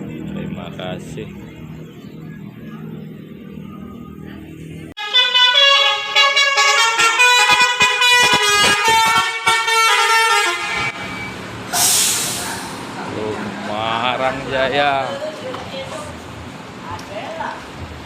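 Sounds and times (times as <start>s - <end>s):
multi-tone air horn melody: 5.0s - 11.3s
hiss burst: 11.7s - 12.9s.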